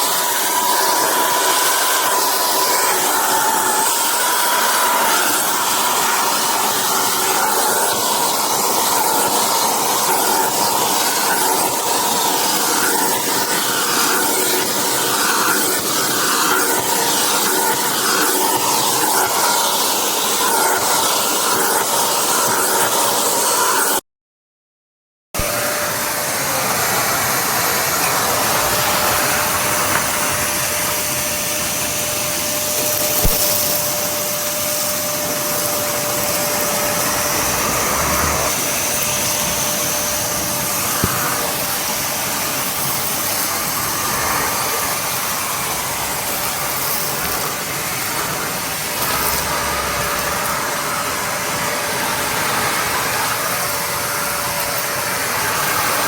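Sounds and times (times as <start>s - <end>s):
vacuum cleaner running: 0.0s - 24.0s, 25.4s - 56.0s.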